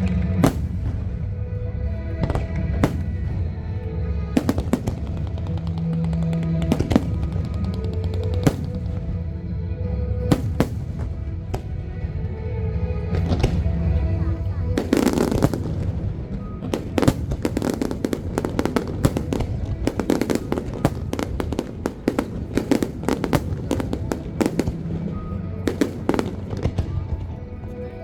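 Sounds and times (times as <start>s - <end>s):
fireworks cracks and bangs: 0.0s - 9.3s, 10.2s - 12.2s, 13.1s - 27.8s.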